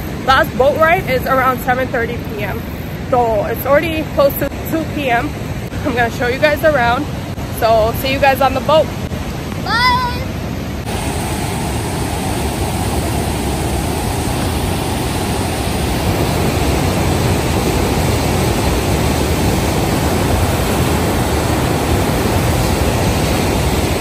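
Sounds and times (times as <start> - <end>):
waterfall rushing: 5.6 - 24.0.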